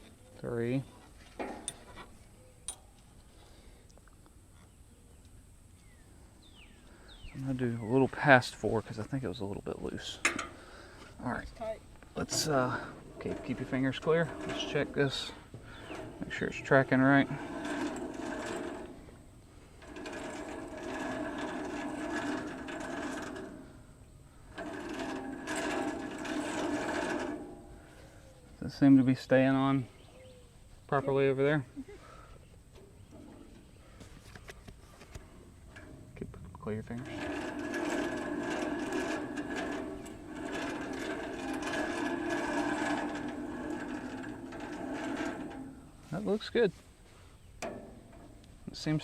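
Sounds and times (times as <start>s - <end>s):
band sawmill running: 12.1s - 28.0s, 36.8s - 46.8s.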